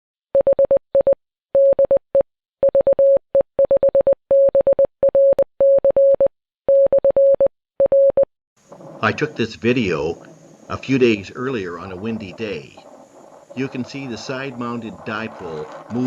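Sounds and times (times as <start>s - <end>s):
morse code beeps: 0.4s - 8.3s.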